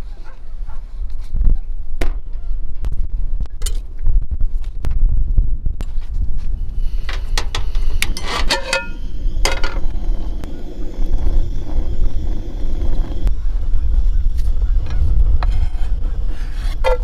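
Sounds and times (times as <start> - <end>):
clicks and light clinks: 6.9 - 9.9.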